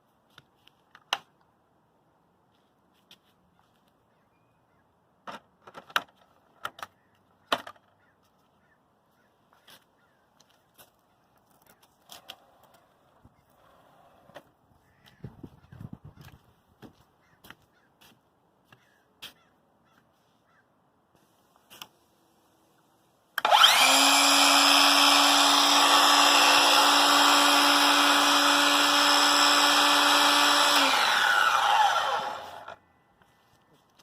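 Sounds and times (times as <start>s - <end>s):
miter saw blade spinning: 23.4s - 32.8s.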